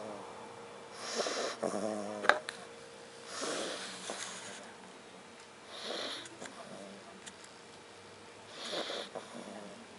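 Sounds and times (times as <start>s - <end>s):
dog snoring: 0.0s - 0.2s, 0.9s - 2.4s, 3.2s - 4.6s, 5.6s - 7.1s, 8.5s - 9.9s.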